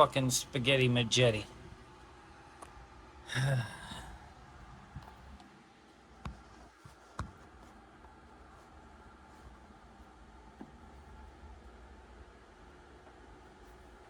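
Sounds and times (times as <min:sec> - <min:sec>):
quiet background hum: 0:00.0 - 0:14.0
low vocal grunt: 0:03.3 - 0:04.2.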